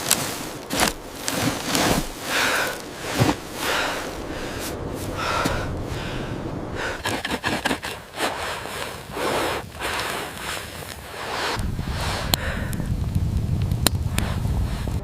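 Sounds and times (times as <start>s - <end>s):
person breathing hard: 2.2s - 13.0s.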